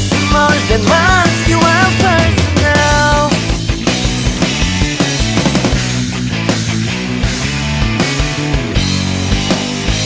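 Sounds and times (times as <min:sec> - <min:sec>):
rock music with singing: 0:00.0 - 0:10.0.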